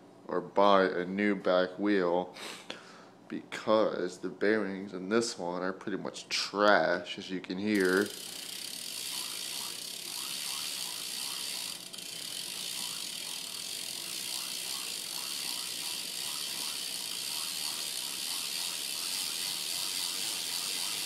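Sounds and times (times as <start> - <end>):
rhythmic ticking of spinning wheel: 7.8 - 21.0
rough hub running noise: 7.8 - 21.0.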